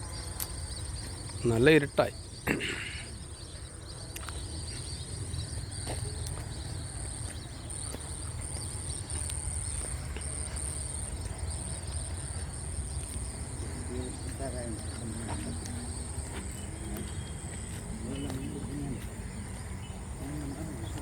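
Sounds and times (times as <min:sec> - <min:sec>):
crickets chirring: 0:00.0 - 0:21.0.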